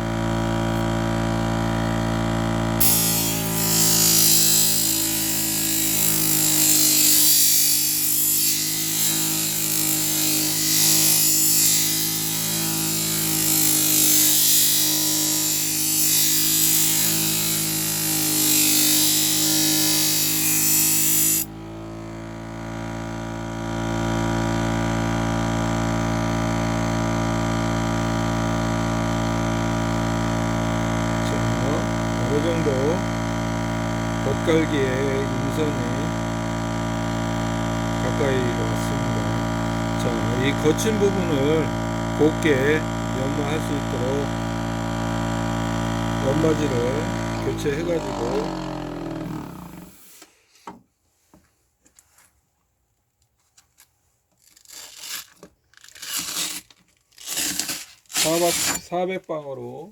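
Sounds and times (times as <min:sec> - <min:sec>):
motor humming: 0:00.0 - 0:50.2
knife grinding on abrasive paper: 0:02.8 - 0:21.5, 0:54.4 - 0:58.9.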